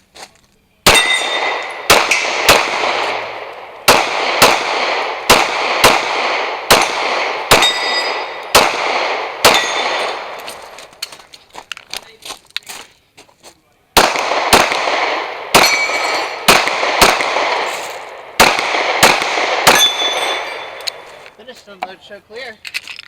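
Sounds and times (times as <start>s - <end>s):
pistol shots: 0.8s - 10.9s, 14.0s - 21.4s.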